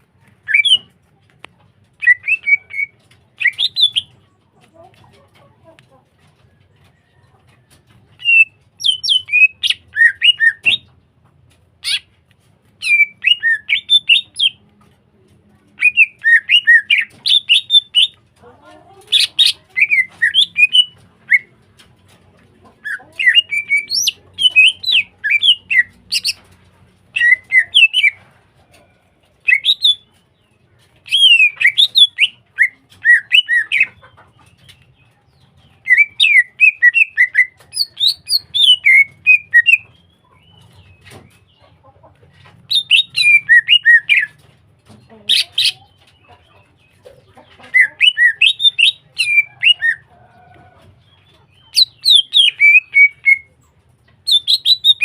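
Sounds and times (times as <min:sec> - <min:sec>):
bird singing chirps and whistles: 0:29.5 - 0:30.0, 0:31.1 - 0:33.9, 0:35.9 - 0:39.9, 0:42.7 - 0:44.3, 0:47.8 - 0:50.0, 0:51.8 - 0:53.5, 0:54.3 - 0:55.0.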